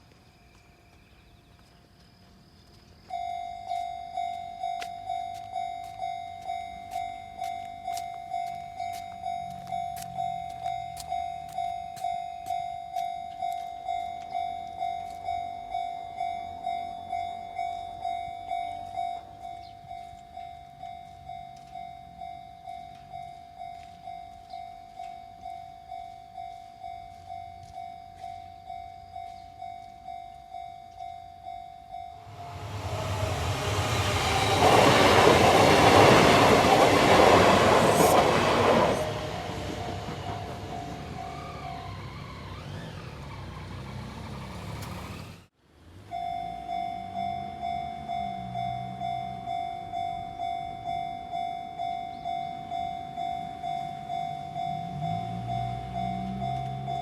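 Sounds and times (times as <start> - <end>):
level crossing bell ringing: 3.2 - 33.0, 46.0 - 57.0
electric train passing: 13.3 - 57.0.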